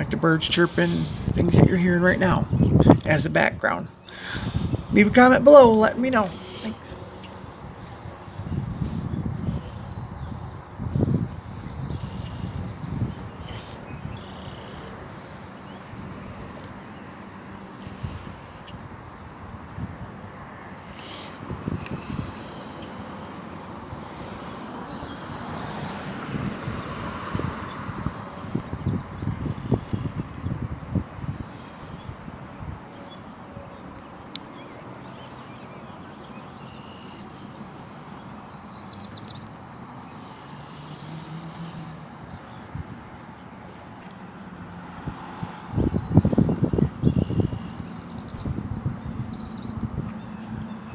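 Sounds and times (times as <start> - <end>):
wind on microphone: 0.0 - 3.7, 4.3 - 5.4, 6.3 - 32.9, 44.9 - 50.9
outdoor background rush: 0.0 - 50.9
songbirds calling: 0.0 - 50.9
bird chirps: 11.6 - 16.0, 17.7 - 30.8, 34.4 - 40.3, 47.0 - 50.9.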